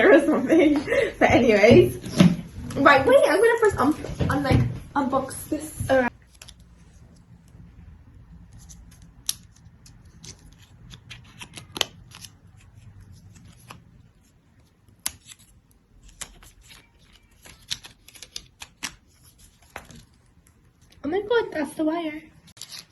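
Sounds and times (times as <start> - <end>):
cable packaging crinkling and snapping: 6.1 - 7.6, 8.5 - 21.0, 22.5 - 22.9.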